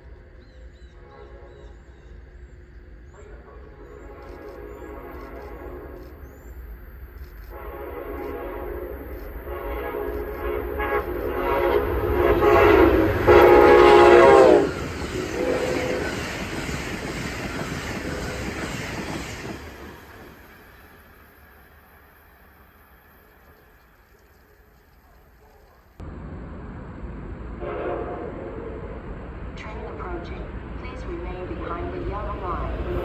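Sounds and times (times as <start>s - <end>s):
train air horn: 1.0s - 1.8s, 3.1s - 6.4s, 7.5s - 16.5s, 27.6s - 29.0s
train wheels clattering on rails: 8.2s - 25.7s.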